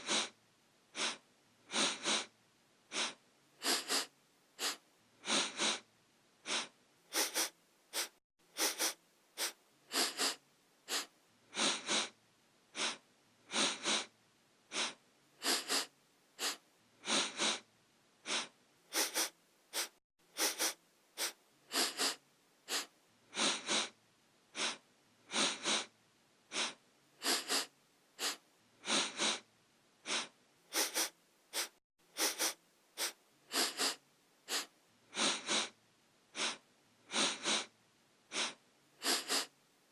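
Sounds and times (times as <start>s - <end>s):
person sniffing: 0.0s - 2.3s, 2.9s - 14.1s, 14.7s - 25.9s, 26.5s - 39.6s.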